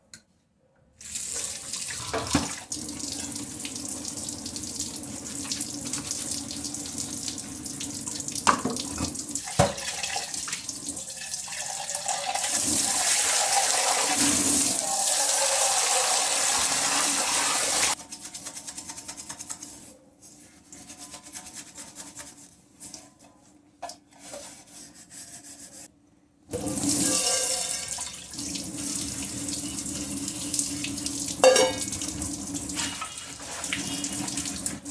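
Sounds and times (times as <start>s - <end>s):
tap water running into sink: 1.2s - 18.0s, 26.6s - 34.9s
dishes knocking and clinking: 31.4s - 32.0s.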